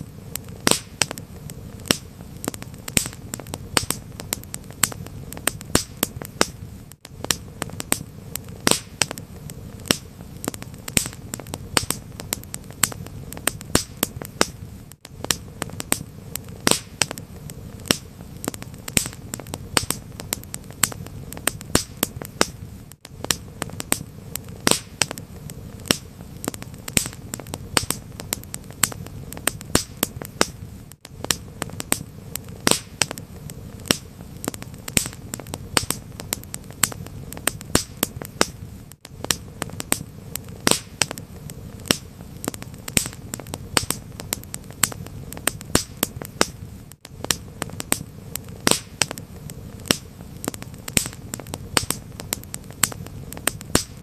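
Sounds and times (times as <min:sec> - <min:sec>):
low fire rumble: 0:00.0 - 0:54.0
wood fire crackling and popping: 0:00.0 - 0:54.0.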